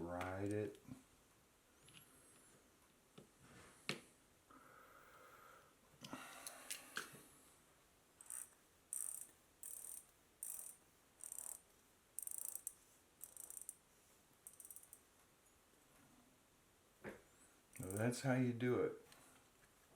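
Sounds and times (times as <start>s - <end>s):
bicycle freewheel pawls ticking: 8.2s - 11.6s, 12.2s - 13.8s, 14.5s - 15.0s.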